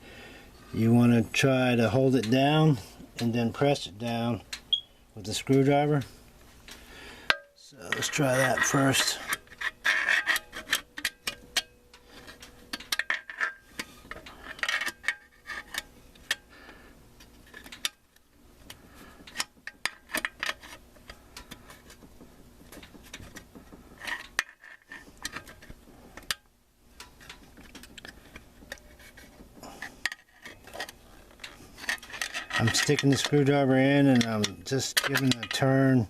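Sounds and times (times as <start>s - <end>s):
screwdriver scraping metal: 7.8s - 16.4s, 27.0s - 35.7s.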